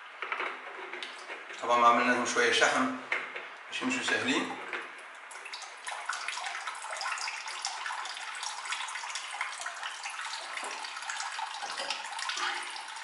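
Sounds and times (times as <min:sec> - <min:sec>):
tap water running and splashing: 0:04.8 - 0:13.0.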